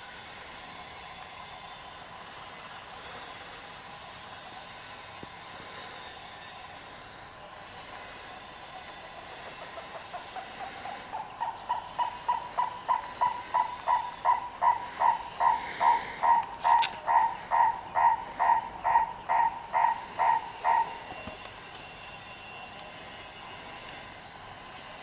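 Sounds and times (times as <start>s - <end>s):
steady hiss: 0.0s - 11.2s
bird calling short notes: 11.4s - 21.4s.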